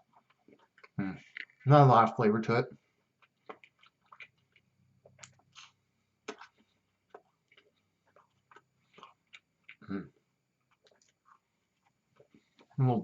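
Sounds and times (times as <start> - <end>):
chewing toast: 0.0 - 1.7, 2.8 - 12.8
mouth clicks and smacks: 3.2 - 12.8.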